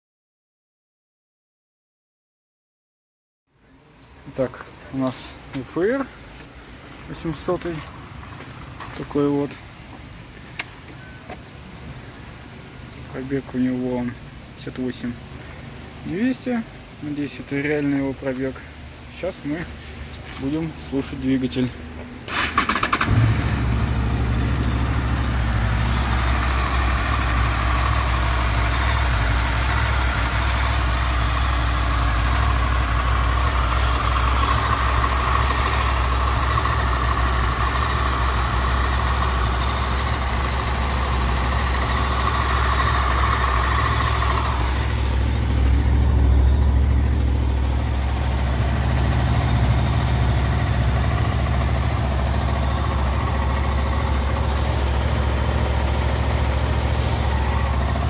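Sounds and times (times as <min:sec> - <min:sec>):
motorcycle engine starting and idling: 0:19.8 - 0:58.0.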